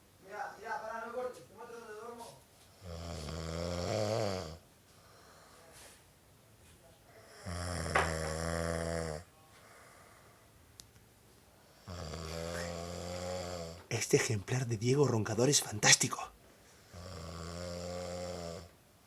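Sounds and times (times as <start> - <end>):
quiet breathing: 2.5 - 14.0, 16.2 - 18.8
man snoring: 2.8 - 4.6, 7.2 - 10.2, 11.8 - 13.9, 16.9 - 18.7.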